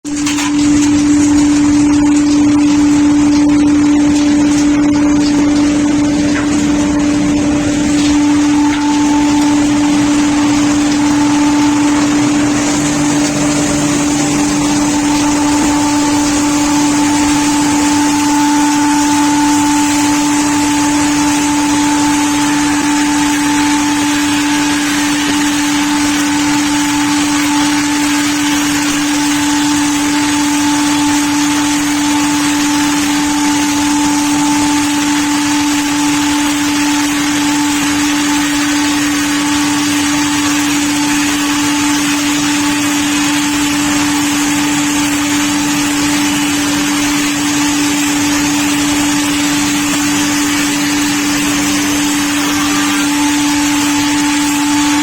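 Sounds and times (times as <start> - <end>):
saw machine droning: 0.0 - 55.0.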